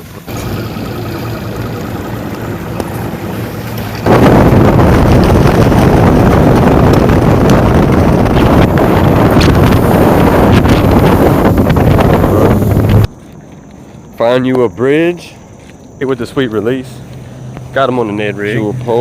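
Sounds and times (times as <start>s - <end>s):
low rumble: 0.0s - 13.1s
wind buffeting microphone: 0.0s - 13.9s.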